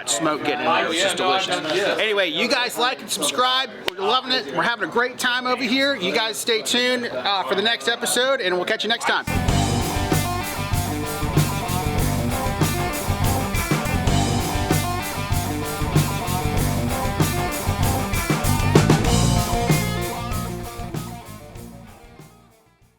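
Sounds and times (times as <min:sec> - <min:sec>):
drum kit beating: 0:09.3 - 0:22.4
rock band jamming: 0:09.3 - 0:22.5.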